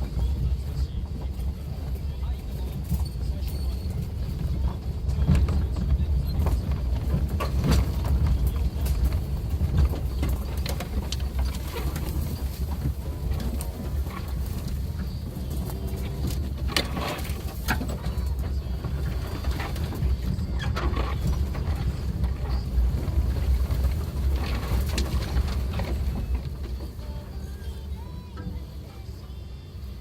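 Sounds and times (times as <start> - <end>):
engine and road rumble: 0.0 - 30.0
knocks and clatters from bumps: 2.7 - 28.6.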